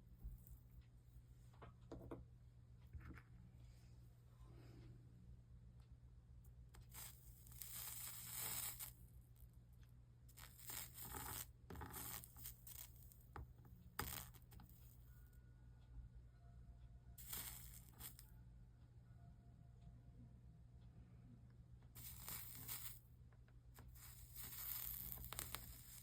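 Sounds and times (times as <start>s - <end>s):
flux sizzling and crackling: 6.8s - 9.0s, 10.3s - 13.1s, 14.0s - 14.8s, 17.2s - 18.2s, 22.0s - 23.0s, 23.8s - 26.0s.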